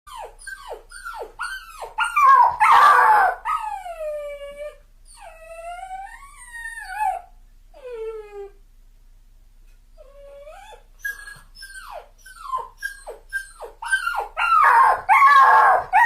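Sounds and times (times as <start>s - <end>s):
dog whimpering and whining: 0.1s - 8.6s, 10.0s - 16.0s.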